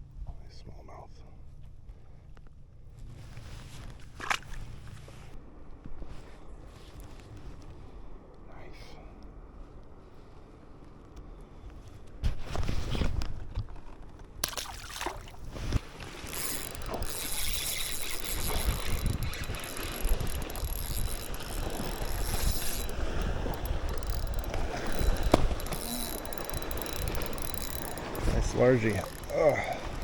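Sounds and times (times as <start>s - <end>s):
fishing reel cranking: 16.1s - 30.0s.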